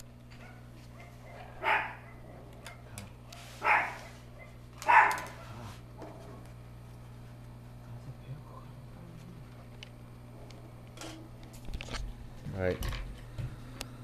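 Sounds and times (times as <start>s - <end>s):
dog barking: 0.4s - 2.5s, 3.6s - 5.6s.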